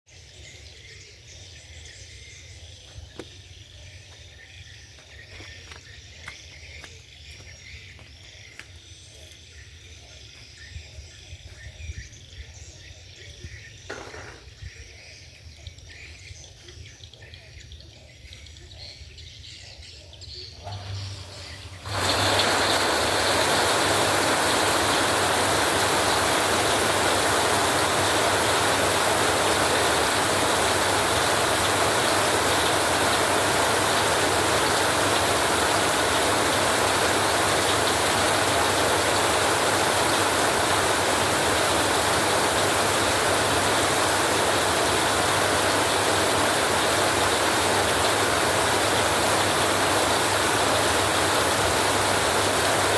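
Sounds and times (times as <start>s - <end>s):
heavy rain on metal roof: 21.9s - 52.9s.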